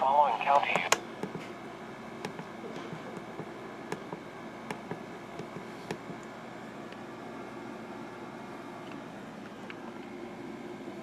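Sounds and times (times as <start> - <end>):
radio hiss: 0.0 - 1.0
sharp static clicks: 0.0 - 1.5.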